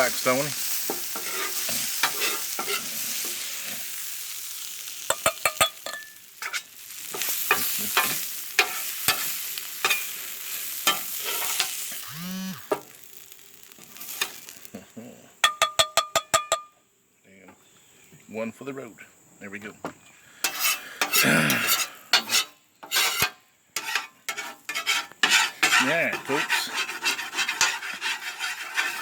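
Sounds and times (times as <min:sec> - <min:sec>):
vegetables sizzling on griddle: 0:00.0 - 0:16.5, 0:20.3 - 0:29.0
metal spatula scraping steel: 0:00.8 - 0:04.0, 0:05.2 - 0:12.1, 0:20.4 - 0:29.0.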